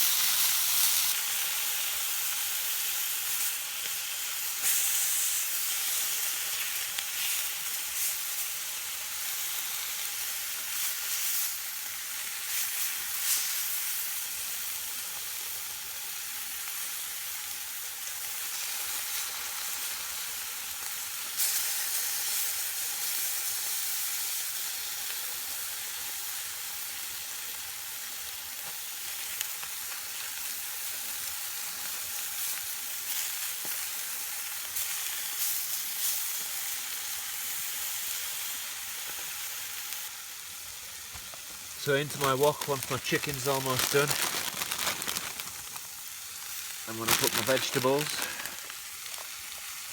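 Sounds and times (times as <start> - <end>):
chicken sizzling in a wok: 0.0 - 49.9
oil spitting and crackling: 41.1 - 49.9.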